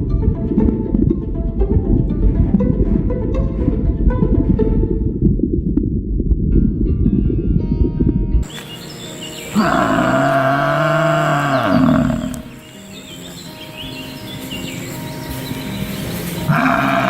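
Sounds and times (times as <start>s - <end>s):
cow mooing: 9.5s - 12.6s, 16.5s - 17.0s.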